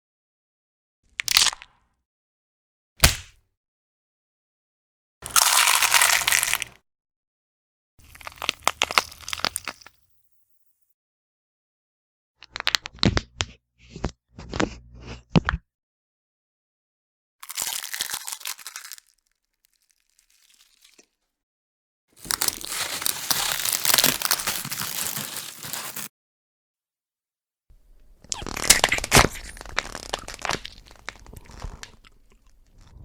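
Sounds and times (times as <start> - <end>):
bone cracks and snaps: 1.2 - 1.8, 3.0 - 3.4, 5.2 - 6.8, 17.4 - 20.1, 28.3 - 32.1
bone crunching crackle: 5.2 - 6.8, 17.4 - 21.0, 22.2 - 26.1, 28.3 - 32.5.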